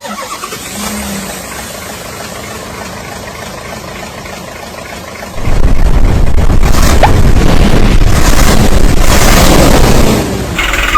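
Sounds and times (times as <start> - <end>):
engine running with hiss: 0.1 - 10.9
loud dense low rumble: 5.3 - 10.6.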